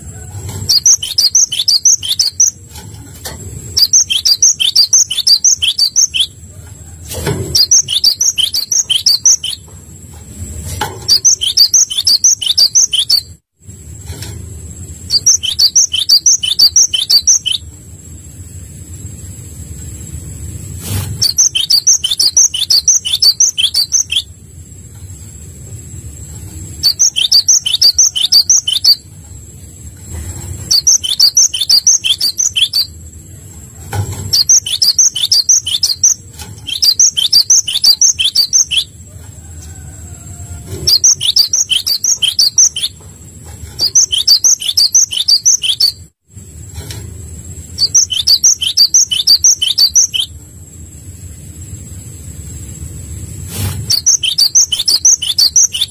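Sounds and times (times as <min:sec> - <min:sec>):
songbird chirping rapidly: 0:00.6 - 0:02.7, 0:03.6 - 0:06.4, 0:07.4 - 0:09.7, 0:11.0 - 0:13.4, 0:15.0 - 0:17.7, 0:21.2 - 0:24.4, 0:26.6 - 0:29.1, 0:30.5 - 0:33.2, 0:34.2 - 0:39.0, 0:40.7 - 0:43.0, 0:43.6 - 0:46.1, 0:47.7 - 0:50.4, 0:53.9 - 0:55.9.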